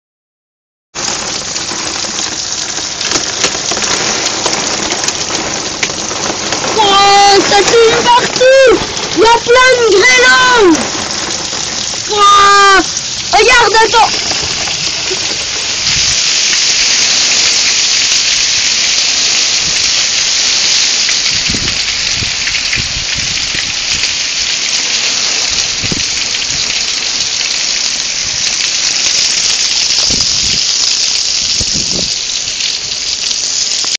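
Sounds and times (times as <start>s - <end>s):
hailstones pattering: 1.0s - 33.9s.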